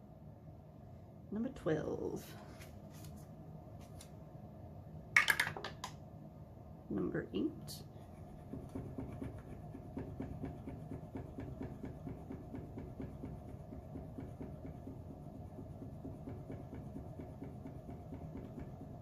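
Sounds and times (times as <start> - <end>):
scratching a scratch card: 8.2 - 17.2.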